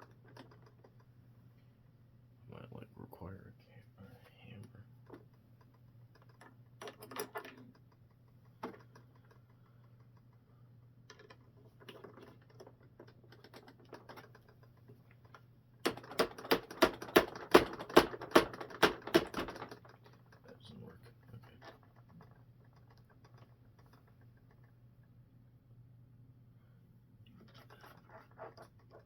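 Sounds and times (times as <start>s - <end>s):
plastic parts clicking and rustling: 5.0s - 10.3s, 11.1s - 24.7s.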